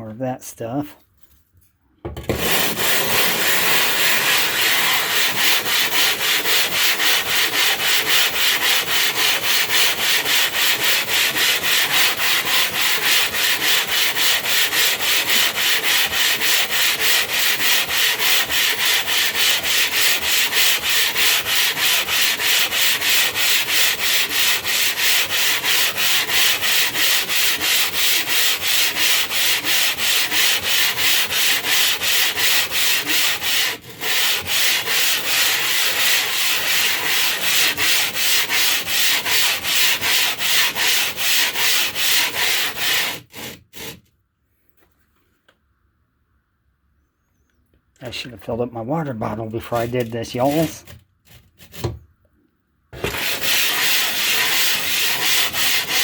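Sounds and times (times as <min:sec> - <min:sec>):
stone scraping gritty: 0:49.4 - 0:51.8.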